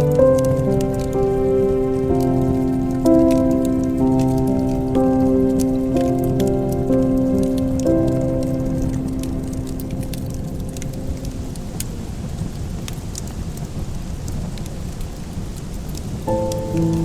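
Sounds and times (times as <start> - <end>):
soft music: 0.0 - 12.2, 16.3 - 17.0
wood fire crackling and popping: 0.0 - 17.0.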